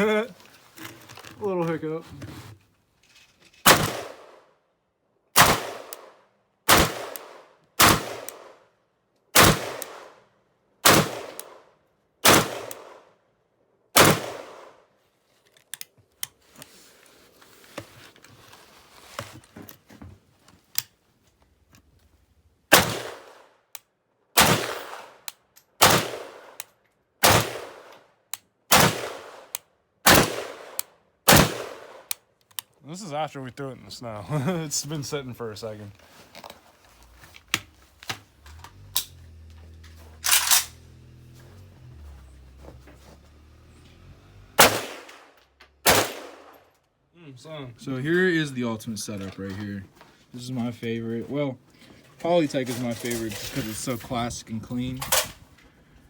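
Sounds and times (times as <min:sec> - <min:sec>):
rifle shots with echo: 0:03.7 - 0:04.4, 0:05.4 - 0:08.6, 0:09.4 - 0:10.2, 0:10.8 - 0:13.1, 0:14.0 - 0:14.8, 0:22.7 - 0:23.5, 0:24.4 - 0:26.6, 0:27.2 - 0:27.9, 0:28.7 - 0:29.5, 0:30.1 - 0:32.1, 0:44.6 - 0:46.5
faint gun handling clicks: 0:05.8 - 0:06.1, 0:11.3 - 0:11.6, 0:15.4 - 0:16.7, 0:24.8 - 0:25.8, 0:31.9 - 0:32.8, 0:40.2 - 0:40.8.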